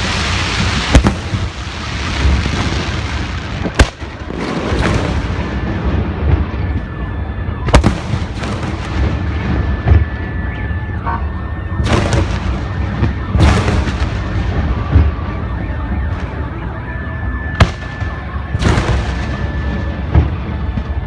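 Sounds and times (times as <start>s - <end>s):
sharp firework crack: 0.0s - 6.2s, 7.7s - 9.4s, 11.9s - 14.4s, 17.6s - 19.5s
fireworks booming and crackling: 0.0s - 21.0s.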